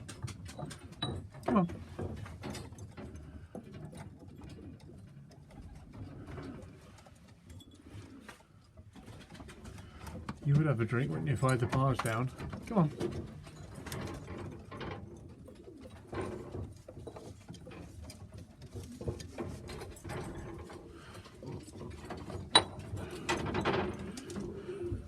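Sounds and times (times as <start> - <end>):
clicks and shuffling: 0.0 - 25.0
pigeons cooing: 3.0 - 10.4, 12.4 - 25.0.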